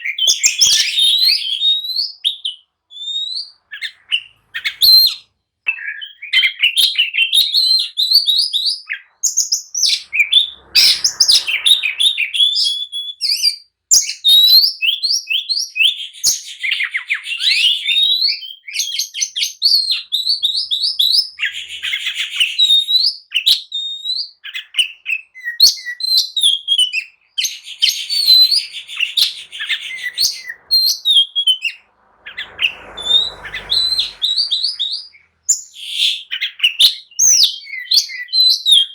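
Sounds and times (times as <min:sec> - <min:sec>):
bird singing rapid whistles and trills: 0:00.0 - 0:38.9
harsh buzzy bird note: 0:09.8 - 0:12.6, 0:27.4 - 0:36.2.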